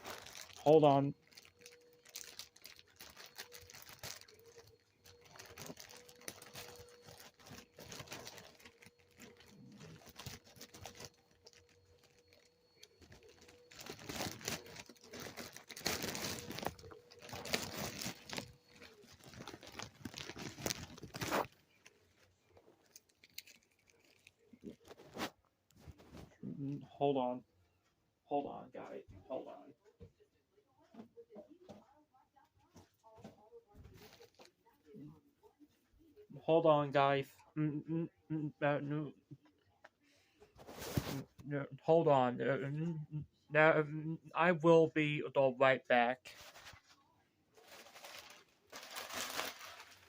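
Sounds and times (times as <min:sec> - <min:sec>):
packaging crinkling and rustling: 0:00.0 - 0:26.4, 0:40.6 - 0:41.4, 0:46.3 - 0:47.0, 0:47.6 - 0:50.0.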